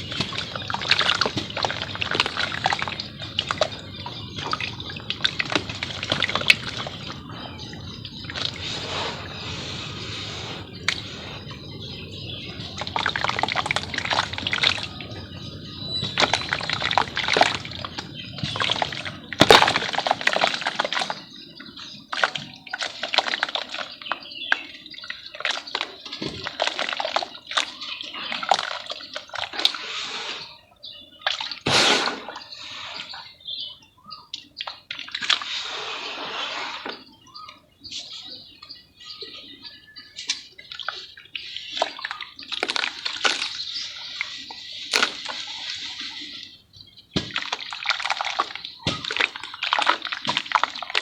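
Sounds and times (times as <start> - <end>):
mud crumbling in water: 0.0 - 29.8, 40.7 - 46.1, 47.1 - 51.0.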